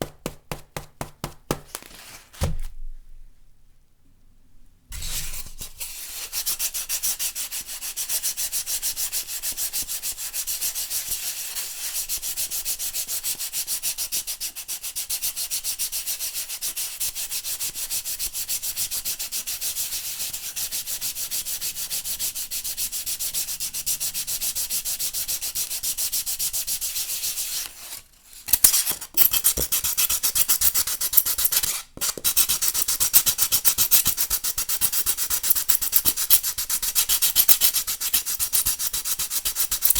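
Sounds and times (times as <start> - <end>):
foam board being rubbed: 0.0 - 2.5, 24.9 - 39.9.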